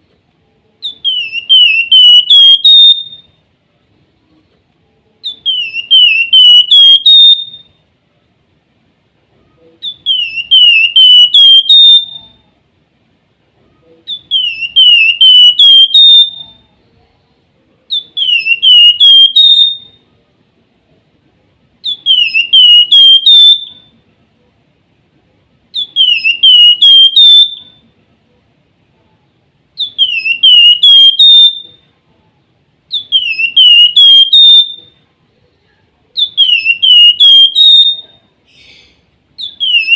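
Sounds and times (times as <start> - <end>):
bird singing whistled phrases: 0.8 - 3.4, 5.2 - 7.8, 9.8 - 12.4, 14.1 - 16.6, 17.9 - 20.0, 21.8 - 23.9, 25.8 - 27.8, 29.8 - 31.8, 32.9 - 34.9, 36.2 - 39.9.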